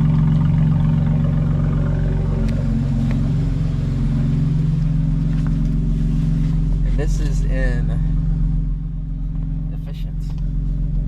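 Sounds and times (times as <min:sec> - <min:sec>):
car engine idling through exhaust: 0:00.0 - 0:11.0.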